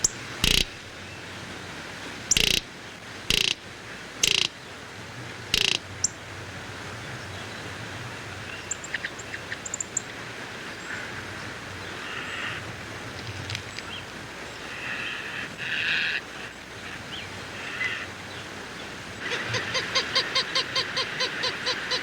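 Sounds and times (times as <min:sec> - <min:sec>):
harsh rasping bird calls: 0:00.0 - 0:01.2, 0:02.3 - 0:02.7, 0:03.3 - 0:04.6, 0:05.5 - 0:06.2
small birds chirping: 0:00.0 - 0:01.2, 0:02.3 - 0:02.6, 0:03.3 - 0:03.6, 0:04.2 - 0:04.5, 0:05.5 - 0:06.2, 0:08.5 - 0:10.1
outdoor background noise: 0:00.0 - 0:22.0.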